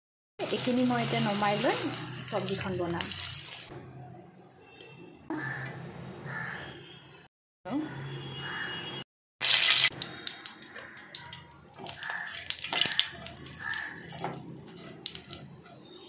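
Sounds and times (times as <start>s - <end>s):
onions sizzling in hot oil: 0.4s - 3.7s, 9.4s - 9.9s, 11.8s - 14.2s.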